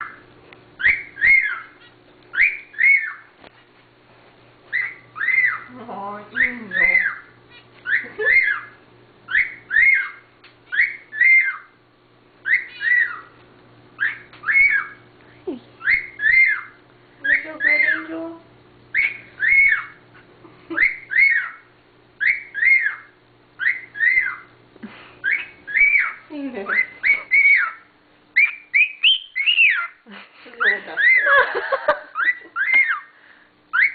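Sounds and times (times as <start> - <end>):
cockatiel whistling: 0.8 - 3.3, 4.7 - 5.7, 6.4 - 11.8, 12.4 - 13.3, 14.0 - 15.0, 15.8 - 18.1, 18.9 - 20.0, 20.7 - 24.5, 25.2 - 30.0, 32.2 - 33.1.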